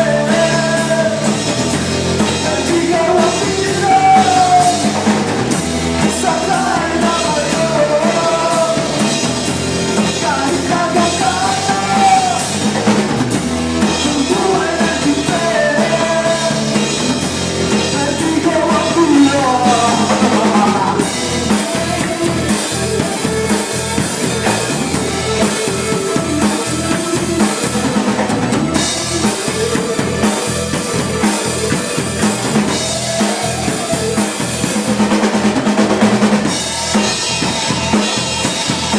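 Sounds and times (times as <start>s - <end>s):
person singing: 0.0s - 1.5s, 2.3s - 5.0s, 6.0s - 9.3s, 9.9s - 12.6s, 13.8s - 17.1s, 17.7s - 35.2s
drum kit beat: 0.0s - 38.9s
live rock band playing: 0.0s - 38.9s.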